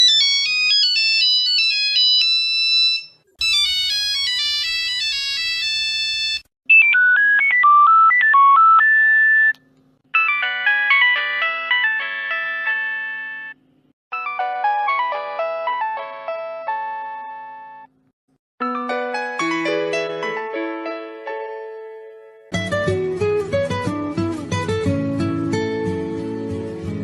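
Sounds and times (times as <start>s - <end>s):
mobile phone ringtones: 0.3s - 9.5s, 10.2s - 13.6s.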